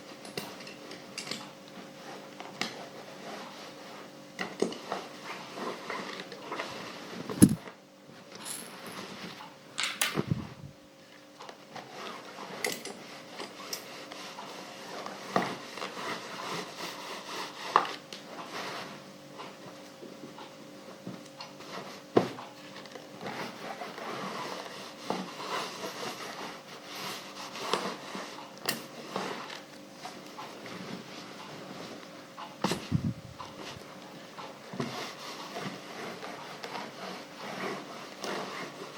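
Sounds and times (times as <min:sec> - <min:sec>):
iron sliding over fabric: 0:34.8 - 0:38.9.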